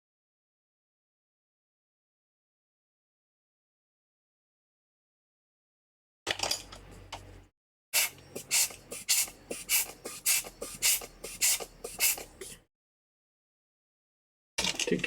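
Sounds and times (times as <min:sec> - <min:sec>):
brush scratching strokes: 0:08.0 - 0:12.6.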